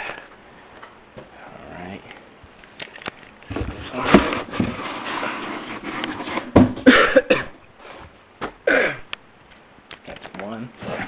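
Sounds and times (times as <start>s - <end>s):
person coughing: 6.8s - 7.6s, 8.7s - 9.1s.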